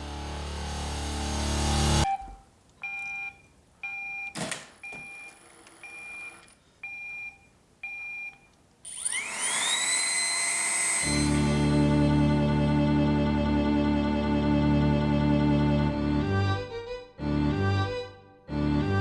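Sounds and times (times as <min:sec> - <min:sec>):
vacuum motor whining: 0:08.9 - 0:11.9.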